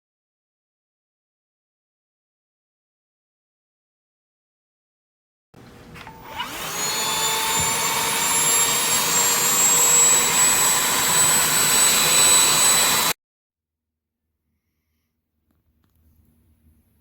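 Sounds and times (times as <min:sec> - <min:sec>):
handheld vacuum motor whining: 0:05.8 - 0:13.2.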